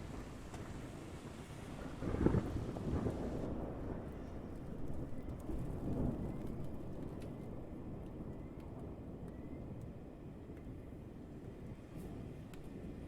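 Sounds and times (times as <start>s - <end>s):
rain: 0.0s - 13.0s
thunder rumbling: 1.8s - 4.2s.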